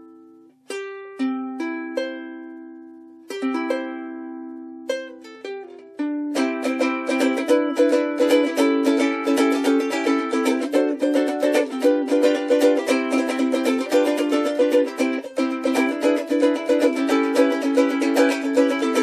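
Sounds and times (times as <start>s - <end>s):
ukulele plucked and strummed: 0.0s - 19.0s.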